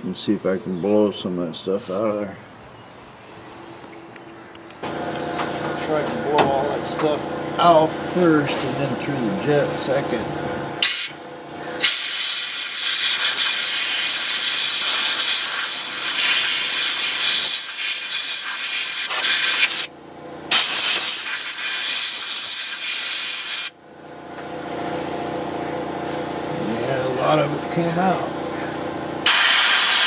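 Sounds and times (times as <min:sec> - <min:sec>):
low steady hum: 0:04.8 - 0:11.8
compressed air hissing: 0:04.8 - 0:19.9, 0:20.5 - 0:23.8, 0:29.2 - 0:30.0.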